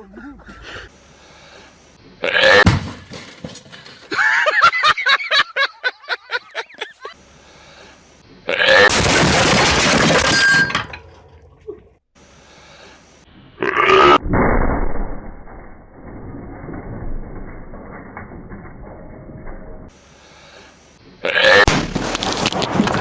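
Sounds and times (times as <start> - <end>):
refrigerator exploding: 2.6 - 3.4, 8.8 - 11.1, 14.2 - 18.5, 21.6 - 23.0.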